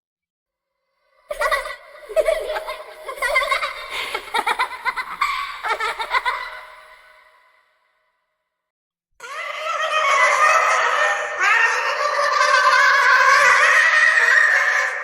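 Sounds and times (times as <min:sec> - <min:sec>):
child giggling: 0:01.3 - 0:07.4.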